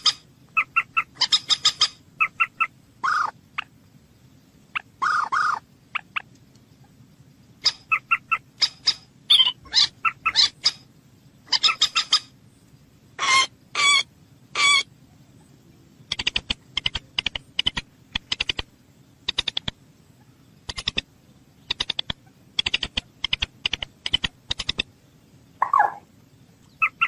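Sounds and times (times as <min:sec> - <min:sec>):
moorhen calling: 0:00.0 - 0:03.8, 0:04.7 - 0:06.9, 0:07.6 - 0:12.4, 0:13.2 - 0:27.0.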